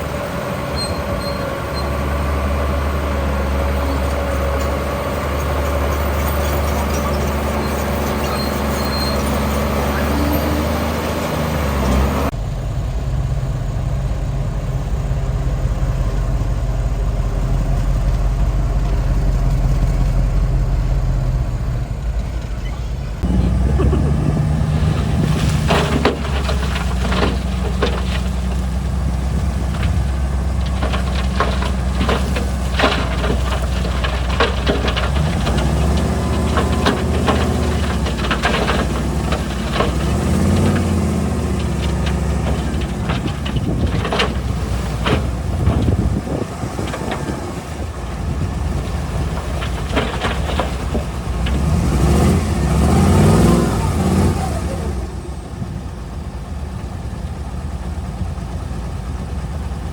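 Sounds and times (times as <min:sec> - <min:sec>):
diesel engine running under load: 0:00.0 - 0:59.9
rocks clattering against steel: 0:23.2 - 0:53.5.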